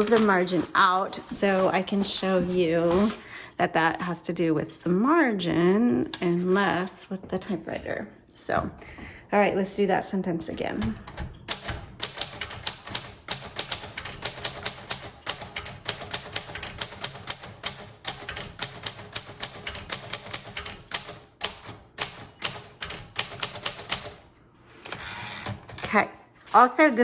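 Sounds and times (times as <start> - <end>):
manual typewriter typing: 0.0 - 1.8, 10.8 - 26.0.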